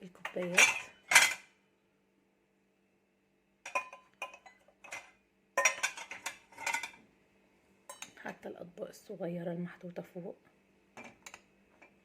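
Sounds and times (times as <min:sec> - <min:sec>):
glasses and dishes clinking: 0:00.4 - 0:01.5, 0:03.7 - 0:07.0, 0:07.9 - 0:08.2.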